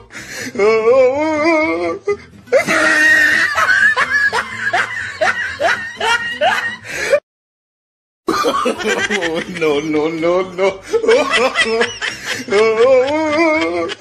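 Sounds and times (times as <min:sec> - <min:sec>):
person laughing in rising bursts: 0:02.5 - 0:06.9.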